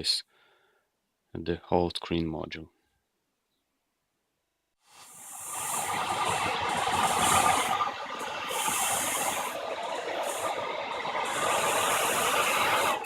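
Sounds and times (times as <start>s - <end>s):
hair dryer running: 4.9s - 13.0s.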